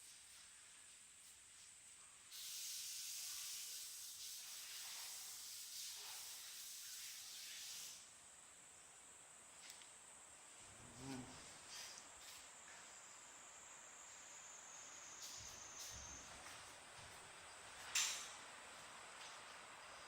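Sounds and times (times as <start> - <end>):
air conditioner blowing air: 7.4 - 20.0.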